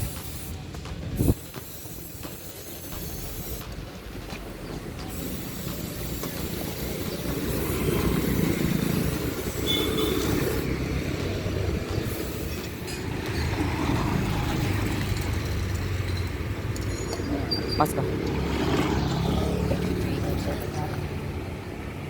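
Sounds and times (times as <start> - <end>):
vehicle engine rumbling: 0.0 - 22.0.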